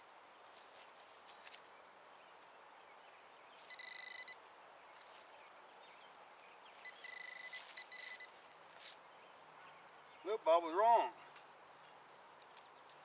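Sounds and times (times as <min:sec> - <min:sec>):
metal detector beeping: 0:03.6 - 0:04.4, 0:06.8 - 0:08.4.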